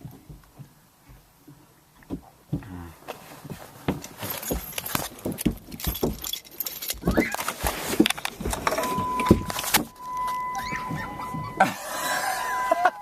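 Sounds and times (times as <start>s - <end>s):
metal objects clattering and jangling: 4.0s - 10.5s
steady beep tone: 8.7s - 13.0s.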